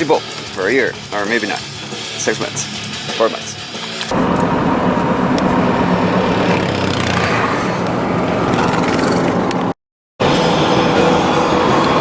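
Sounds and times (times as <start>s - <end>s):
road noise hiss: 3.8s - 9.7s
vehicle engine drone: 4.1s - 12.0s.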